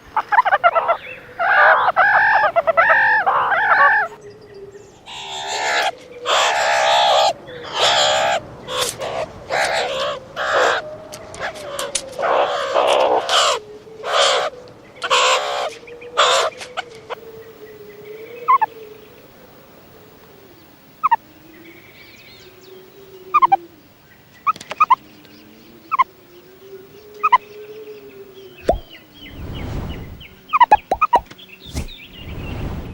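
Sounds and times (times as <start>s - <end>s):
meerkats calling harshly: 0.2s - 4.2s, 5.1s - 10.8s, 23.3s - 23.6s
meerkat chirps: 23.3s - 23.6s.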